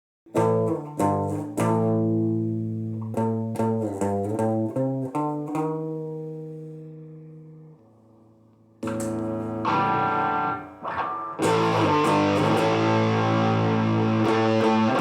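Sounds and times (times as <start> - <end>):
distorted electric guitar riff: 8.8 - 15.0.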